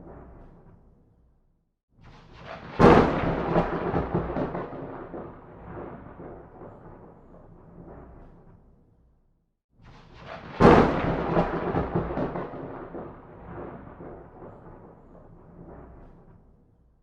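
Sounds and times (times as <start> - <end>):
thunderclap rumbling: 2.4 - 8.5, 10.2 - 16.4.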